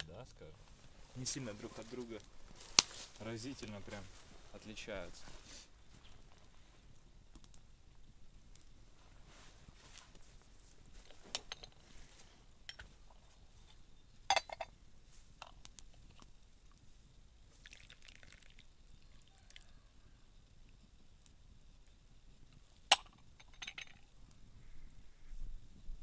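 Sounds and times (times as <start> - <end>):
teacups clinking: 17.6 - 18.7
liquid trickling: 17.6 - 19.6.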